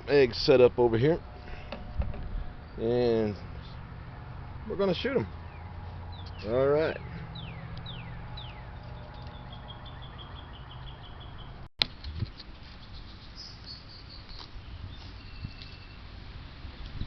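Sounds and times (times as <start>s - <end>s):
birds calling: 1.2s - 11.7s.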